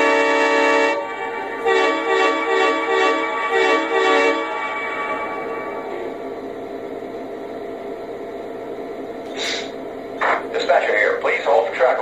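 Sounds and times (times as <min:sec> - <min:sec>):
locomotive air horn blast: 0:00.0 - 0:05.8
diesel locomotive engine running: 0:00.0 - 0:12.0.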